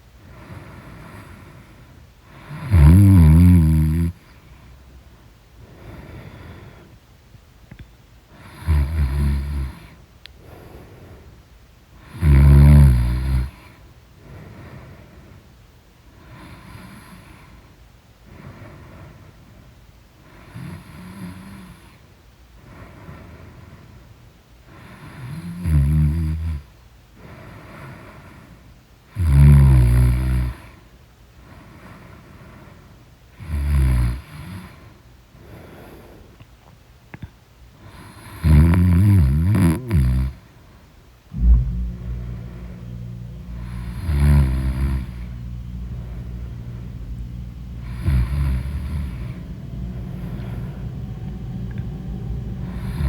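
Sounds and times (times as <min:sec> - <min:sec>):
person snoring: 0:02.4 - 0:04.2, 0:12.0 - 0:13.6, 0:42.4 - 0:45.4, 0:46.0 - 0:50.8.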